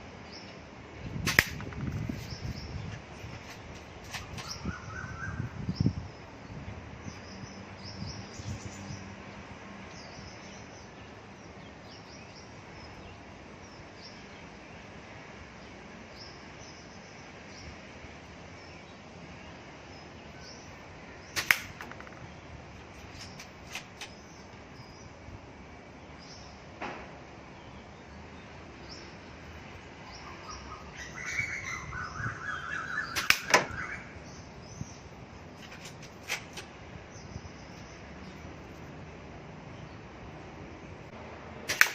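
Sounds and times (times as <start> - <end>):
airsoft rifle shot: 1.2 - 1.7, 21.4 - 22.2, 33.2 - 33.7, 41.7 - 41.9
birds chirping: 1.4 - 9.1, 18.6 - 25.3, 27.5 - 38.9.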